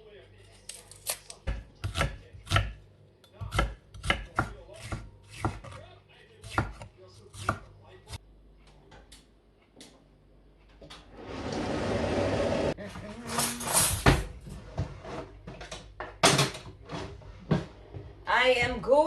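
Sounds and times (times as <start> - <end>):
knife chopping on cutting board: 1.5 - 2.8, 3.4 - 5.8, 6.4 - 7.7.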